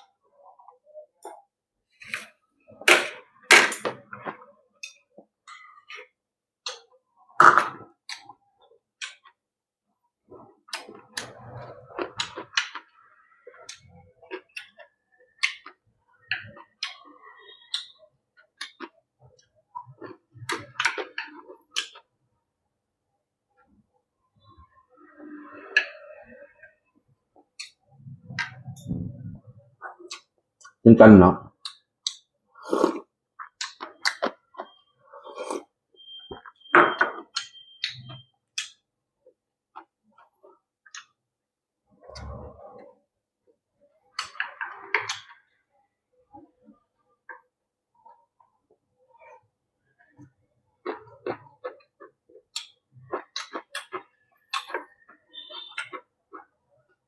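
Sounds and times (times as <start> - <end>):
chewing and mouth clicks: 50.2 - 56.5.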